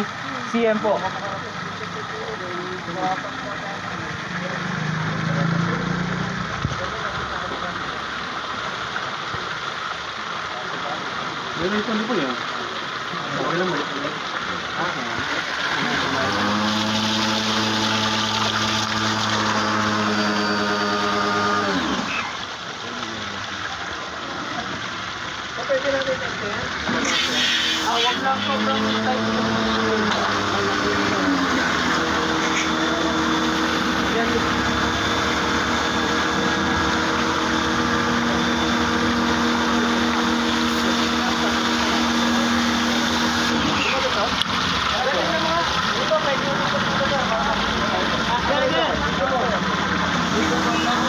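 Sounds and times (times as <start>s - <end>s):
water pump humming: 0.0s - 51.0s.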